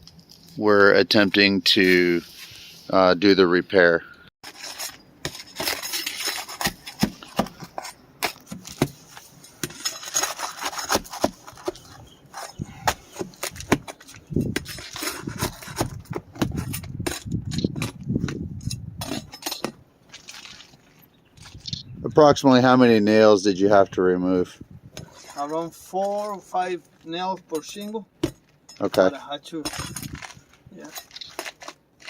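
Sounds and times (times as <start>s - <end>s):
scraping and rubbing of shingle: 4.4s - 21.9s, 24.9s - 27.7s, 28.3s - 32.0s.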